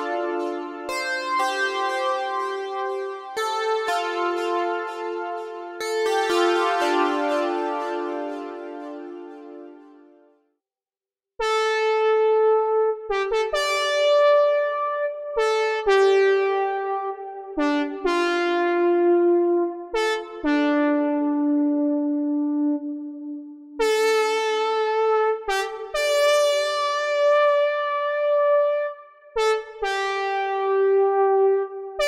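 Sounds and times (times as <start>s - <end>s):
synthesizer chords: 0.0s - 10.3s.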